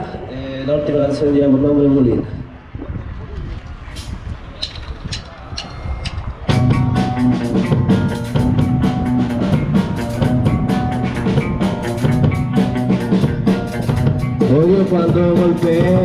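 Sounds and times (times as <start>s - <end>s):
rock band playing: 6.5s - 16.0s.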